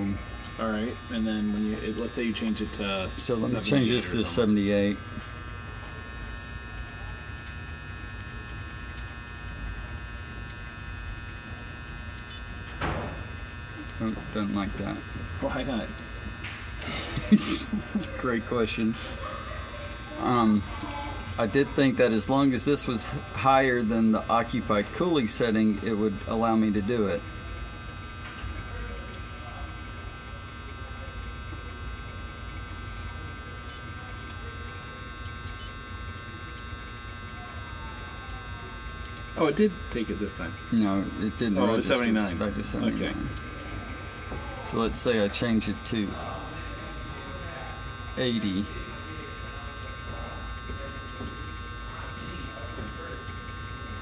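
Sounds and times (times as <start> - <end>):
equipment hum with whine: 0.0 - 54.0.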